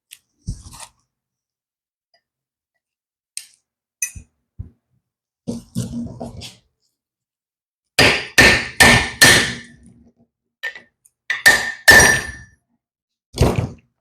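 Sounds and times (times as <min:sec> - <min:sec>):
hammer striking metal tool: 0:08.0 - 0:09.8, 0:10.6 - 0:12.5.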